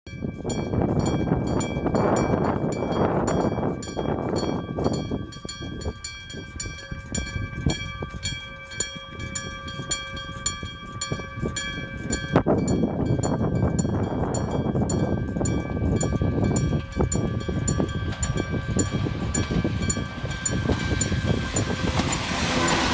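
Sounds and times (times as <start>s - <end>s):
train rumbling: 0.3s - 22.9s.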